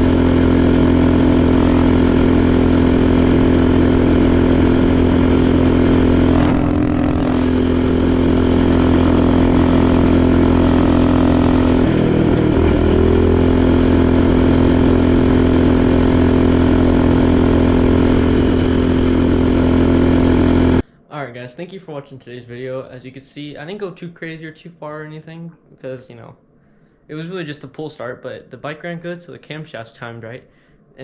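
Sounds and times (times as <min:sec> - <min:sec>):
small engine running: 0:00.0 - 0:20.8.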